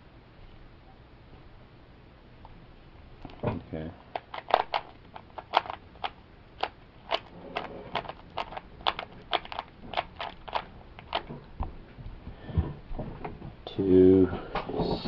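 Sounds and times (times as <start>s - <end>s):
puzzle cube plastic clicks: 4.0s - 11.3s.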